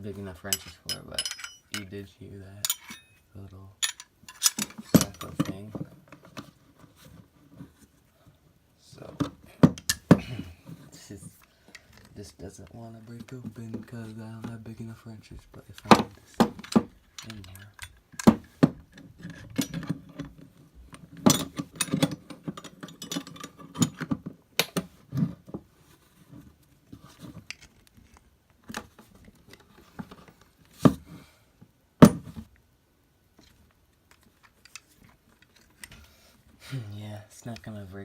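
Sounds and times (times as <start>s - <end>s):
metal wrenches clanking on padlock: 0.5s - 2.0s, 2.6s - 3.2s, 3.8s - 5.7s, 19.2s - 20.3s, 21.3s - 24.7s.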